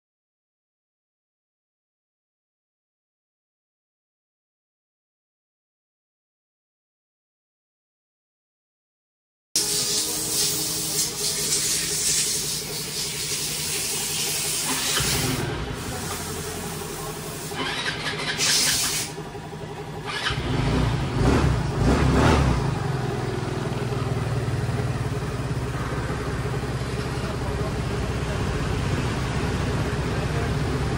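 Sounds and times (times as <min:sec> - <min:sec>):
scooter engine running: 0:09.6 - 0:30.9.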